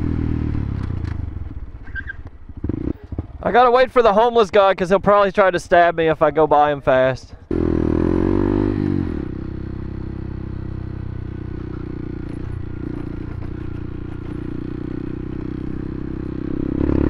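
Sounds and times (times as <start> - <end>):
motorcycle engine idling: 0.0 - 4.3, 9.0 - 17.0.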